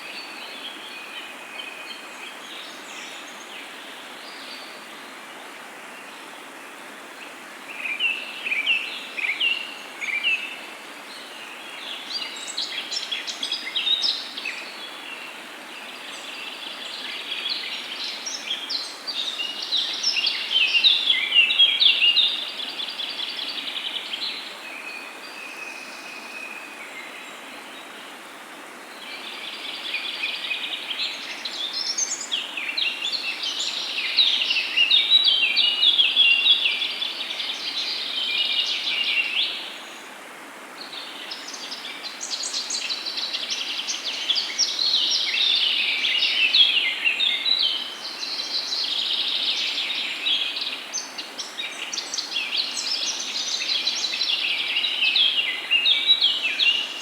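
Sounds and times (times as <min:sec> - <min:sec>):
steady background hiss: 0:00.0 - 0:57.0
songbirds singing and chirping: 0:28.9 - 0:40.1, 0:40.8 - 0:57.0.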